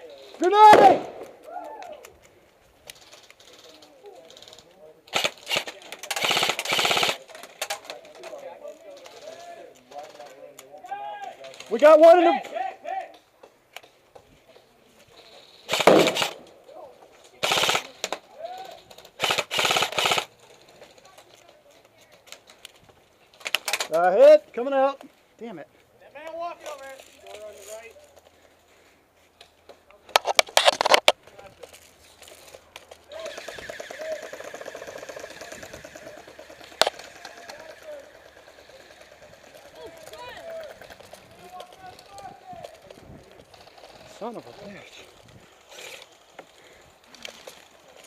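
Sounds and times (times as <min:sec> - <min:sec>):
airsoft gun bursts: 0:05.1 - 0:07.2, 0:15.7 - 0:16.5, 0:17.4 - 0:18.1, 0:19.2 - 0:20.3, 0:33.1 - 0:40.4.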